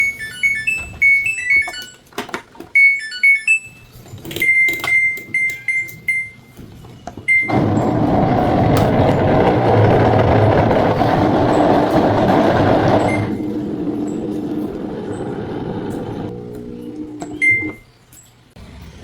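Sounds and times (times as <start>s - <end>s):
control panel beeping: 2.8s - 17.9s
washing machine rattling: 6.4s - 17.8s.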